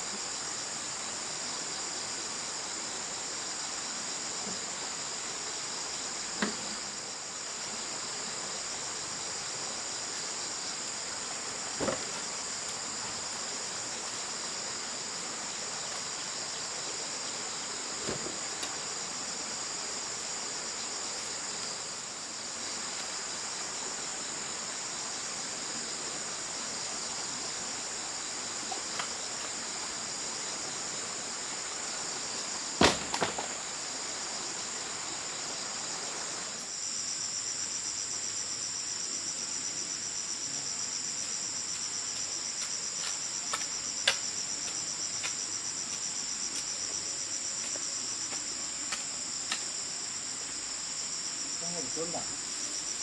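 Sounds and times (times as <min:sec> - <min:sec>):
insects trilling: 0:00.0 - 0:53.0.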